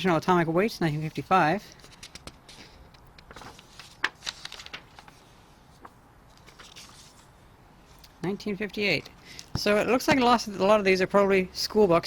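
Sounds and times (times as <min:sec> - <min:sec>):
book pages rustling: 0:01.8 - 0:08.0.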